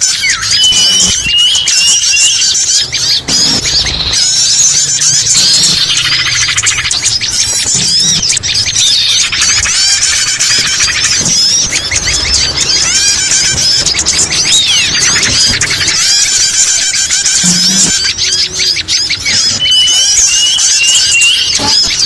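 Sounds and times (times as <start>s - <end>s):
small birds chirping and trilling: 0.0s - 22.0s.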